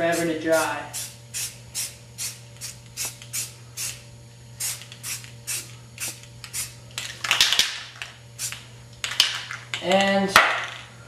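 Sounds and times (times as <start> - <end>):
aerosol spray can hissing: 0.0 - 4.0, 4.6 - 6.8.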